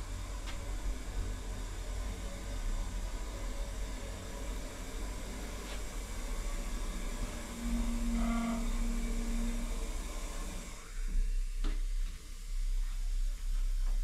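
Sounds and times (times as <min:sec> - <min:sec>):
low machine hum and hiss: 0:00.0 - 0:14.0
flat tone: 0:07.1 - 0:10.3.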